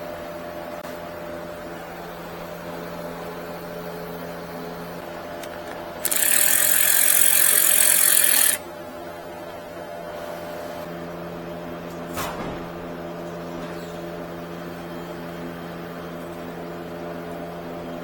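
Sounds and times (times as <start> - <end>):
air tool hissing whir: 5.4 - 8.6.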